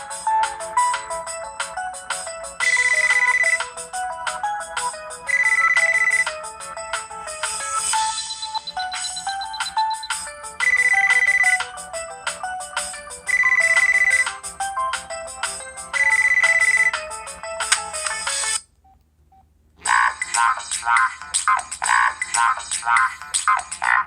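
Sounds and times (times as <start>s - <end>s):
phone ringtone electronic melody: 0.0s - 18.6s.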